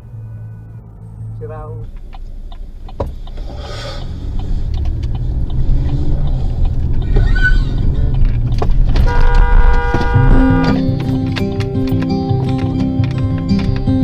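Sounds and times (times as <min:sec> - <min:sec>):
car engine and road rumble: 0:00.0 - 0:14.0
sustained multi-pitch tone: 0:09.1 - 0:10.9.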